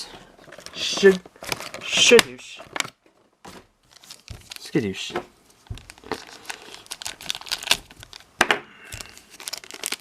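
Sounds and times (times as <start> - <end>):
plastic packaging crinkling: 0.2 - 10.0.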